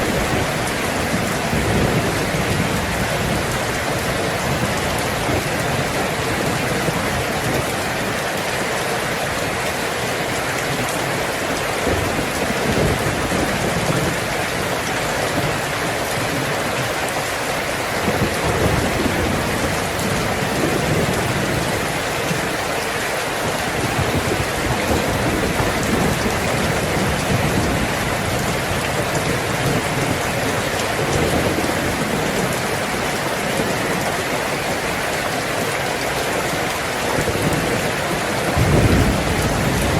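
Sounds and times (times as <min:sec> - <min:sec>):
thunder rolling: 0:00.0 - 0:07.7, 0:11.8 - 0:16.6, 0:18.0 - 0:22.4, 0:23.4 - 0:34.0, 0:37.2 - 0:39.9
heavy rain on a tin roof: 0:00.0 - 0:39.9.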